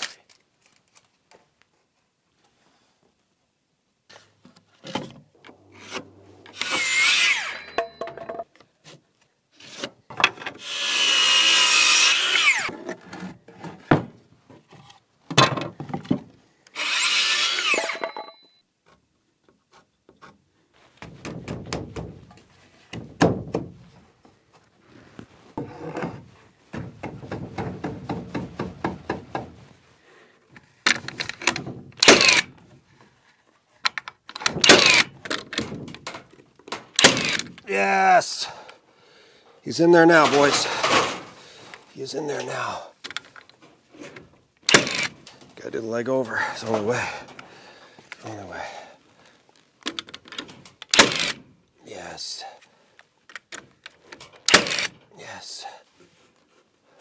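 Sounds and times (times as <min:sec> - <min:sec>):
power tools working wood: 0:05.7 - 0:07.8, 0:10.6 - 0:12.7, 0:16.7 - 0:18.2.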